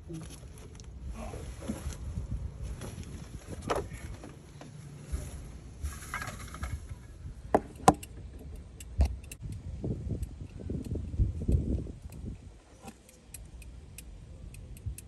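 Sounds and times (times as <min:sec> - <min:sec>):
scraping: 0:02.7 - 0:07.8.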